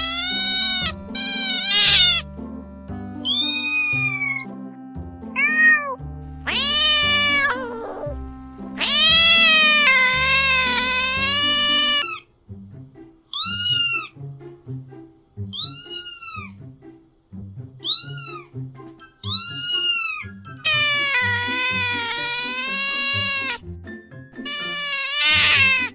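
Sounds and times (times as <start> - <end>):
cat meowing: 0.0 - 2.3, 3.2 - 4.4, 5.4 - 8.2, 8.8 - 12.3, 13.3 - 14.2, 15.5 - 16.6, 17.8 - 18.5, 19.2 - 23.6, 24.4 - 25.9
background music: 0.0 - 25.9.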